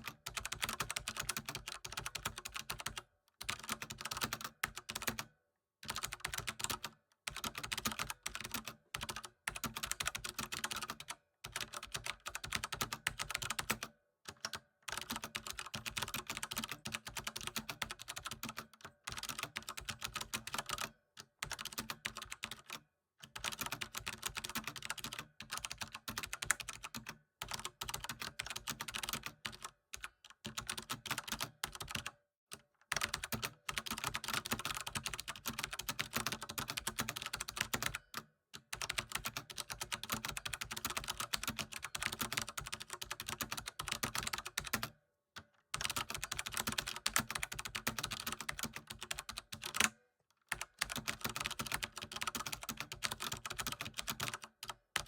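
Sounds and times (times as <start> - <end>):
fast typing on keyboard: 0.0 - 32.2, 32.9 - 45.0, 45.7 - 55.0.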